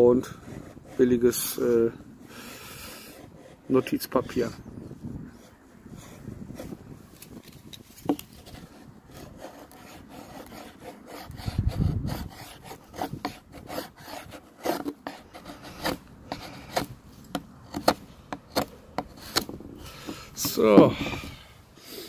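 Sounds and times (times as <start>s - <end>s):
rasping scrapes: 2.7s - 4.6s, 8.0s - 21.4s.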